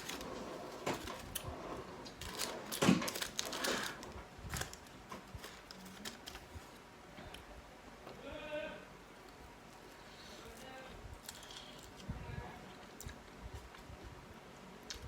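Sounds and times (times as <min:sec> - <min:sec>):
food packaging clicks and rustles: 0:00.0 - 0:06.8, 0:10.5 - 0:12.1.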